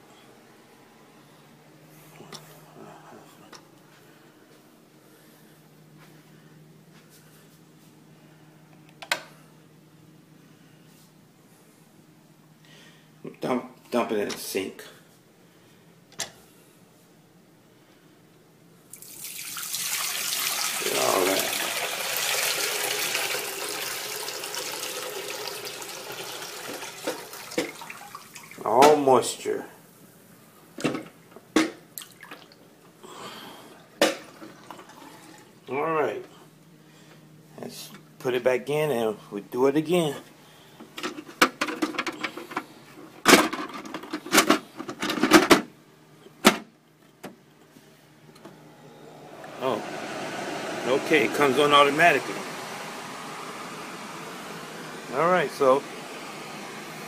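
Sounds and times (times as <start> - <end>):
water pouring into a sink: 19.0 - 28.6.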